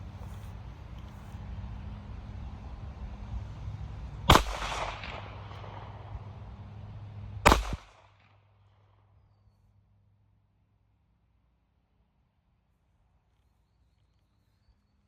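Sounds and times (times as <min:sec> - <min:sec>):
pistol shots with echo: 0:04.3 - 0:06.2, 0:07.4 - 0:08.3.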